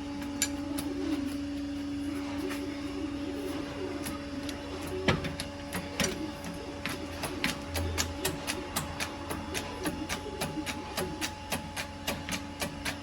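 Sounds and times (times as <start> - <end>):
steady hum: 0.0 - 13.0.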